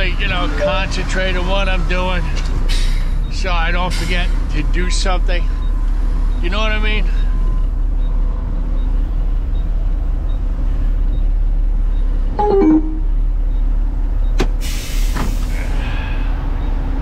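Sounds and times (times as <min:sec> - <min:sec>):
diesel truck engine running: 0:00.0 - 0:12.3
air brake hiss: 0:14.6 - 0:16.3.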